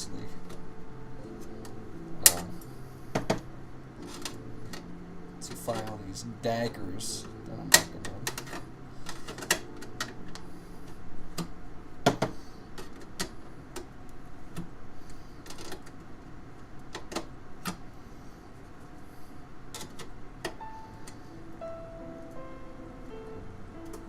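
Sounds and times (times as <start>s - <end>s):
hand tools clicking and tapping: 7.2s - 10.4s.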